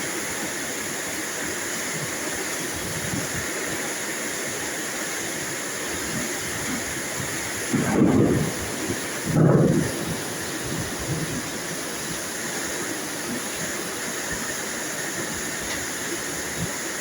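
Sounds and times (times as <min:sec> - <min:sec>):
steady rain: 0:00.0 - 0:17.0
low rumble of thunder: 0:06.5 - 0:11.8.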